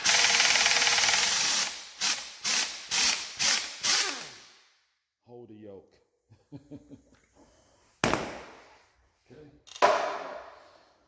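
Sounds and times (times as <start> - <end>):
pneumatic impact wrench: 0.0 - 4.6.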